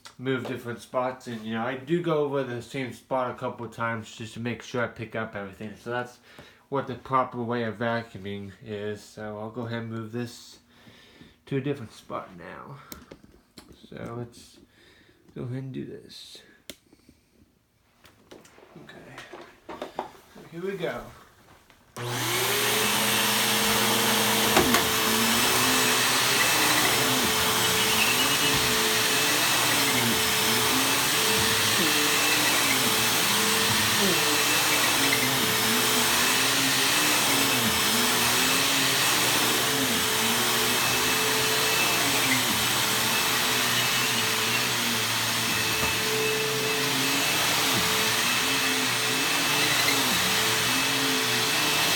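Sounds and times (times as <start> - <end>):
vacuum cleaner running on carpet: 22.0 - 51.9.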